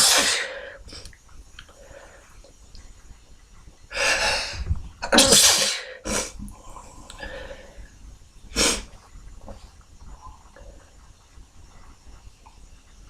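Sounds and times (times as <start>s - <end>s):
man sneezing: 0.0s - 0.6s, 5.1s - 6.4s.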